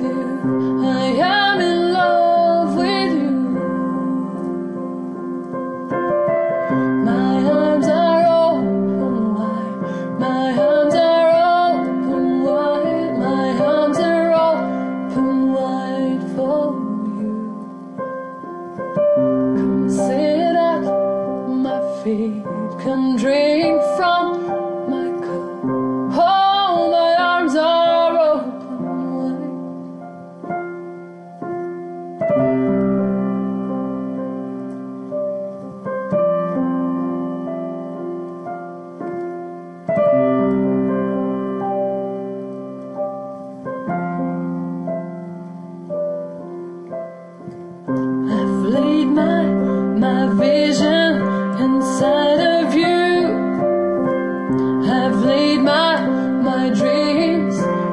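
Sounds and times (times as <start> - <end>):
woman singing wordless melody: 0.0 - 31.0, 47.7 - 57.9
slow piano chords: 0.0 - 57.9.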